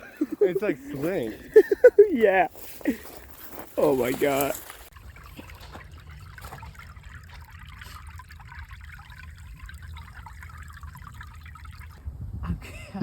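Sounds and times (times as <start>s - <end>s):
snow crackling: 0.0s - 4.9s
wind rumble on microphone: 12.0s - 13.0s.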